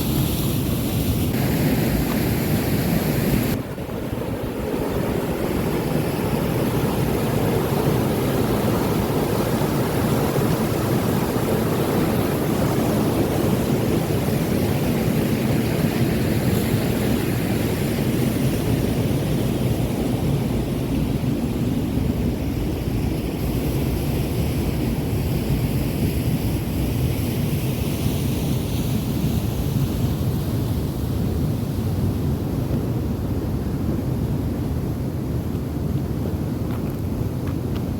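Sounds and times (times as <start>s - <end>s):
waterfall roaring: 1.3s - 18.1s.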